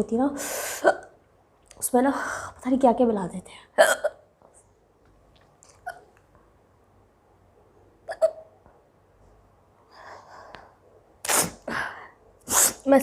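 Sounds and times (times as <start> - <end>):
woman hiccupping: 3.8 - 4.2, 5.7 - 6.1, 8.1 - 8.5.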